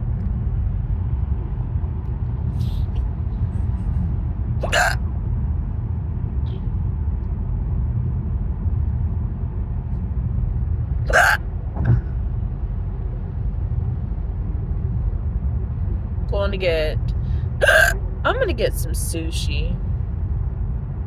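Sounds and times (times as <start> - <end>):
low road noise rumble: 0.0 - 21.0
woman hiccuping: 4.6 - 5.0, 11.1 - 11.4, 17.6 - 18.0.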